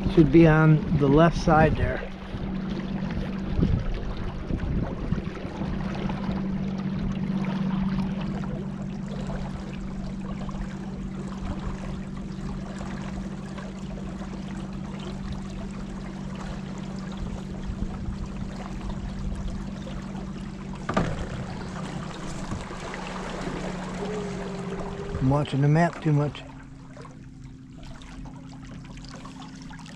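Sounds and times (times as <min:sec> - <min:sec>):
steady low hum: 0:00.0 - 0:29.9
water rushing around kayak: 0:00.0 - 0:29.9
sharp knock: 0:20.9 - 0:21.5.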